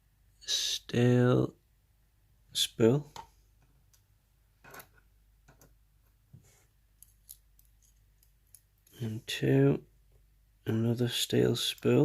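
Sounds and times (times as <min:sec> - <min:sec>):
small metal parts clicking: 0:07.0 - 0:09.0.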